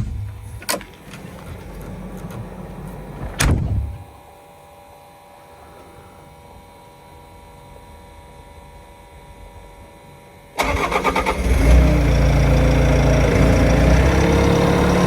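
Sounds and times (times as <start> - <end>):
loud thump: 3.2 - 4.2.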